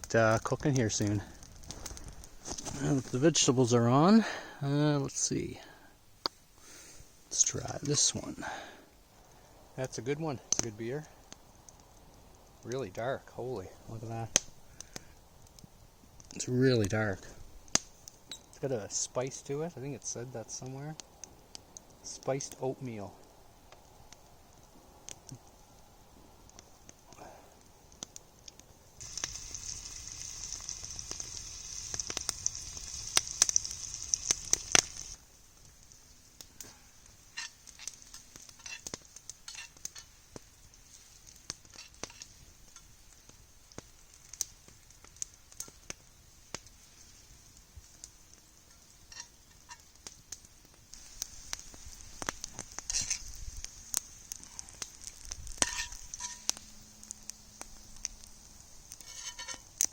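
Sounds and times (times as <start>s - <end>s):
campfire crackles and pops: 0.0s - 59.9s
vegetables sizzling in pan: 29.0s - 35.3s, 36.4s - 44.5s, 46.4s - 59.9s.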